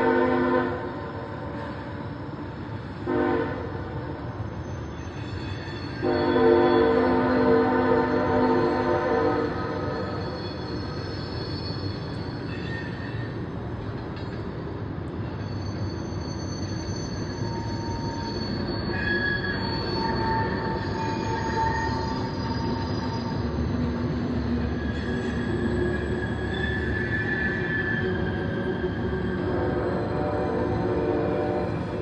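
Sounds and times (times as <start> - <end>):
train wheels rumbling on rails: 0.0 - 32.0
thin squealing tones: 9.4 - 14.5, 15.1 - 30.8.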